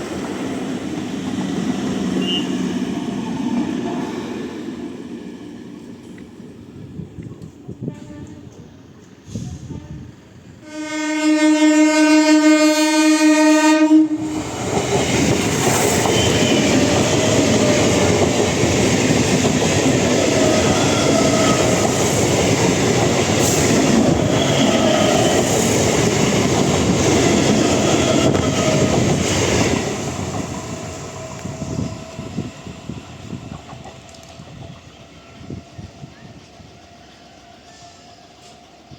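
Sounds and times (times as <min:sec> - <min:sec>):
train horn blast: 0:02.2 - 0:02.8, 0:07.8 - 0:08.6, 0:09.6 - 0:14.3, 0:16.0 - 0:16.7
train wheels clattering over rails: 0:14.3 - 0:31.9.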